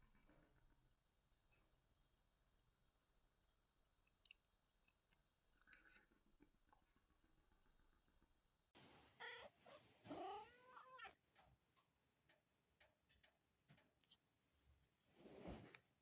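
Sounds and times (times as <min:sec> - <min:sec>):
cat squeak: 0:09.2 - 0:11.1.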